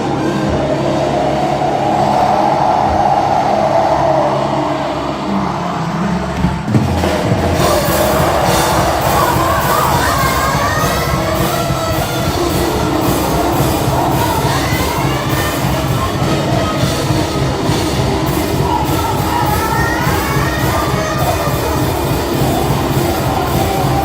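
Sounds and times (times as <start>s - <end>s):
live rock band: 6.4s - 24.0s.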